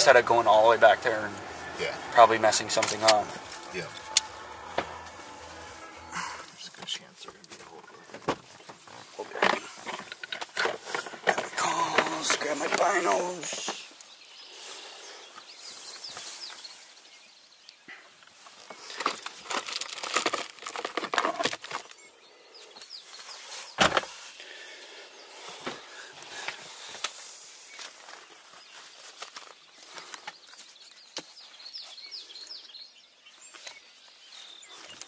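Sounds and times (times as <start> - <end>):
footsteps on woodland floor: 0.0 - 14.6
gear rustling: 0.1 - 7.4, 18.5 - 22.0.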